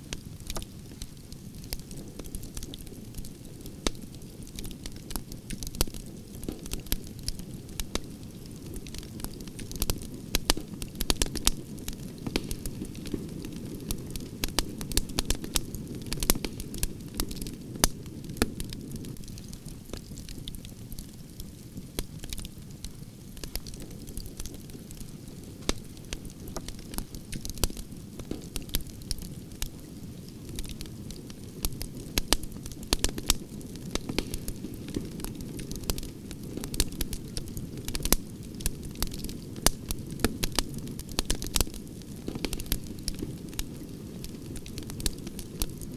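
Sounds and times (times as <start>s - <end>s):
wood fire crackling and popping: 0.1s - 45.9s.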